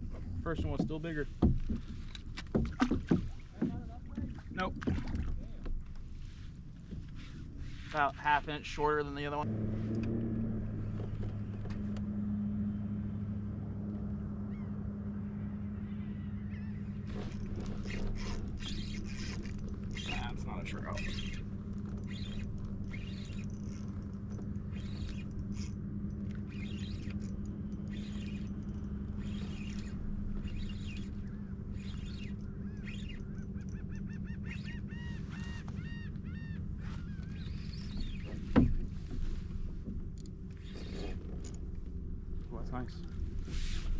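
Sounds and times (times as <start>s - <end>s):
boat motor humming: 0.0s - 43.9s
faint bird chirps: 15.7s - 24.0s, 24.7s - 25.7s, 26.4s - 38.6s.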